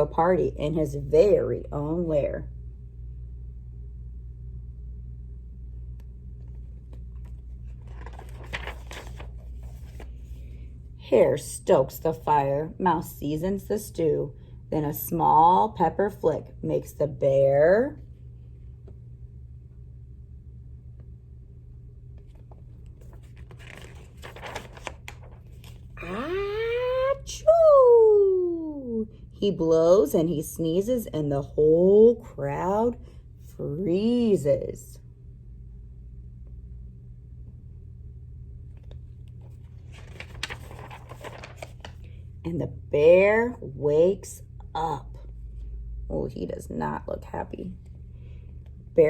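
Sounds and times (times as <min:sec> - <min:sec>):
steady low hum: 0:00.0 - 0:49.0
book page turning: 0:06.4 - 0:10.6, 0:22.2 - 0:26.0, 0:38.8 - 0:42.1
paper rustling and crinkling: 0:06.5 - 0:10.6, 0:22.2 - 0:26.1, 0:38.8 - 0:42.1.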